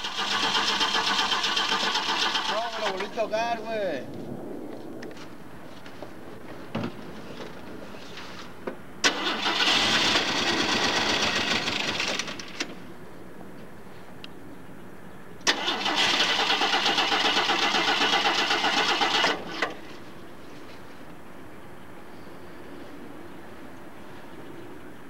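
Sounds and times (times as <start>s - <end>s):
starter cranking engine: 0.0s - 3.2s, 9.0s - 12.8s, 15.5s - 19.8s.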